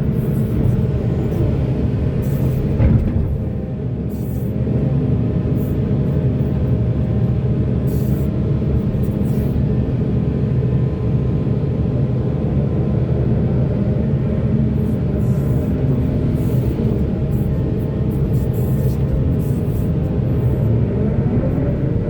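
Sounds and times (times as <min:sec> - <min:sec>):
diesel engine droning: 0:00.0 - 0:07.8, 0:09.6 - 0:22.0.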